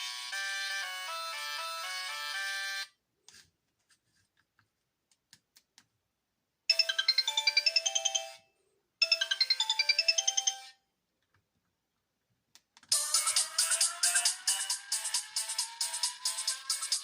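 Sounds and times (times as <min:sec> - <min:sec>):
mobile phone polyphonic tune: 0:00.0 - 0:02.9, 0:06.7 - 0:10.8, 0:12.9 - 0:17.0.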